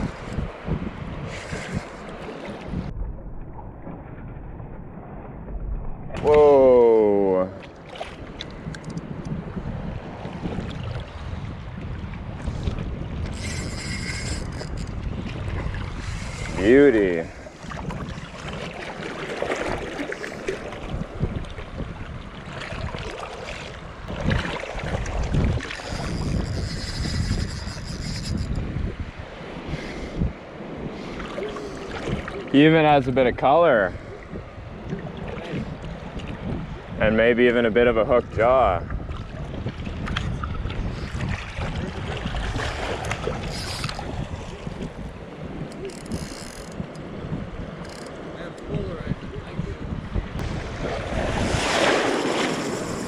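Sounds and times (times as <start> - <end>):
water splashing and lapping: 0.0 - 33.0, 33.9 - 37.0, 38.8 - 48.7, 50.3 - 53.0
wind gusting on microphone: 0.0 - 53.0
water hissing at shore: 1.3 - 2.1, 16.0 - 16.7, 51.5 - 53.0.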